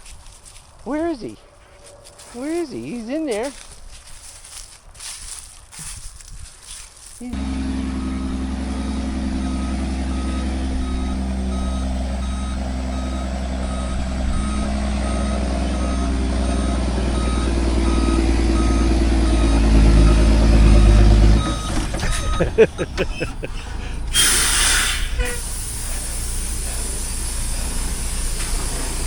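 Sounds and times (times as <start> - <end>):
diesel truck engine: 7.3 - 29.0
reversing alarm beeps: 7.8 - 23.3.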